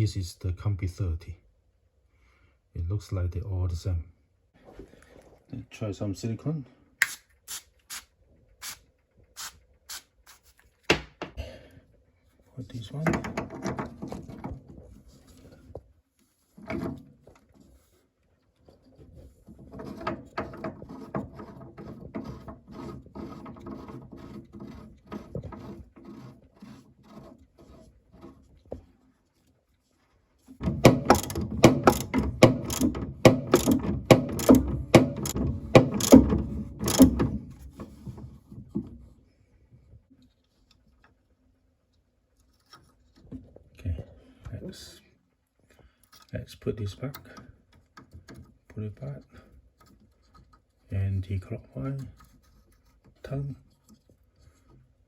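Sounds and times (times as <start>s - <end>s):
small parts clicking and rattling: 30.6s - 37.2s.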